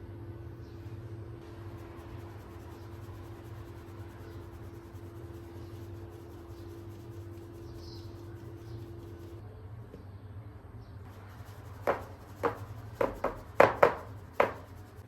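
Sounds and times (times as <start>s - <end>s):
appliance hum: 0.0s - 15.0s
handling taps and rustles: 11.8s - 14.7s.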